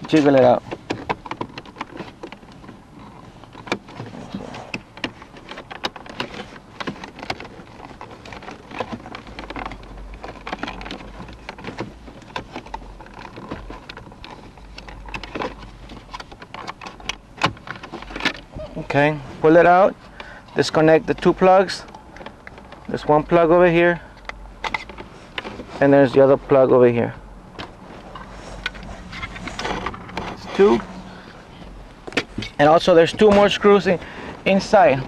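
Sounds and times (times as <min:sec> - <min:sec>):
plastic clicks knocks and rattles: 0:00.0 - 0:04.1, 0:04.7 - 0:18.5.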